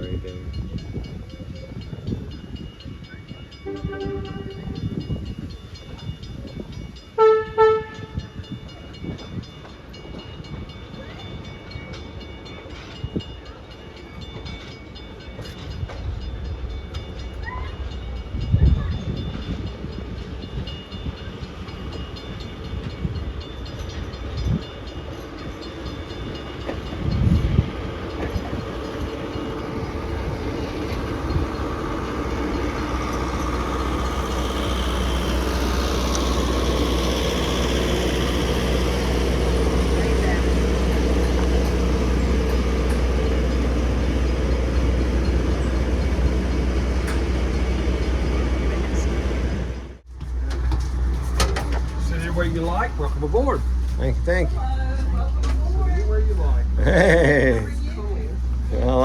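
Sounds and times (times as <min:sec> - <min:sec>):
train rumbling past: 0:00.0 - 0:59.0
train horn blasts: 0:03.6 - 0:05.0, 0:07.2 - 0:08.3.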